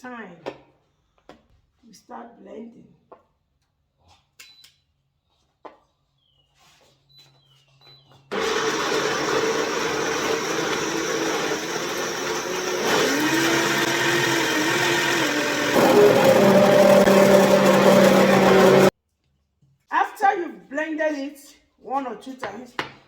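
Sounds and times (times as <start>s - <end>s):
electric blender grinding: 8.3s - 18.9s.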